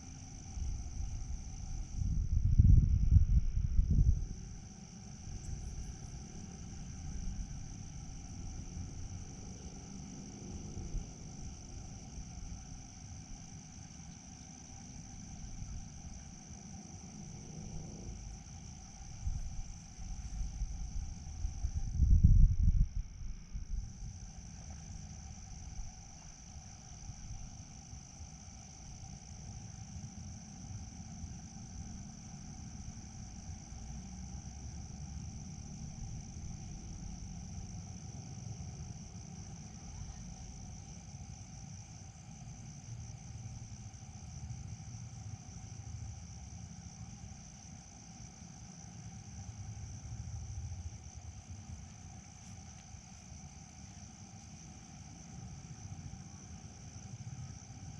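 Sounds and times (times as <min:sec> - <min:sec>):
crickets chirping: 0:00.0 - 0:57.9
lower steady insect tone: 0:00.0 - 0:57.9
low rumble: 0:17.2 - 0:25.9.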